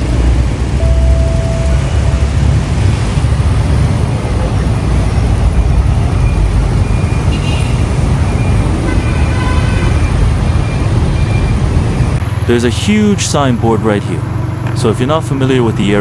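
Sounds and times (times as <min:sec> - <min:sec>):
wind noise: 0:00.0 - 0:12.4
road traffic: 0:00.0 - 0:16.0.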